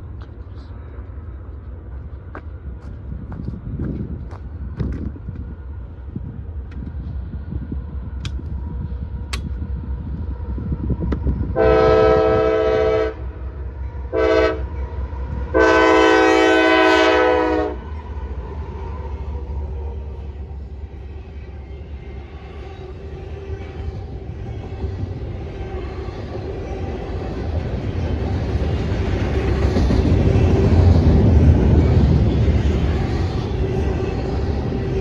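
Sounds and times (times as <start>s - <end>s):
low rumble of train: 0.0s - 35.0s
locomotive air horn blasts: 11.5s - 13.4s, 14.1s - 14.8s, 15.5s - 17.8s.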